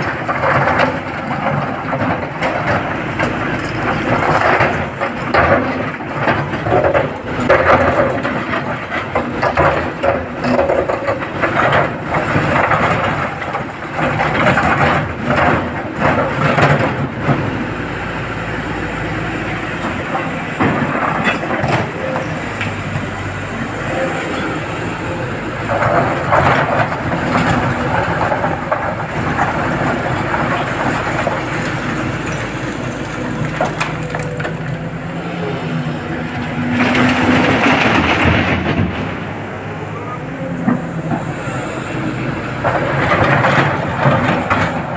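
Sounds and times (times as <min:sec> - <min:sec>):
diesel excavator engine: 0:00.0 - 0:44.9.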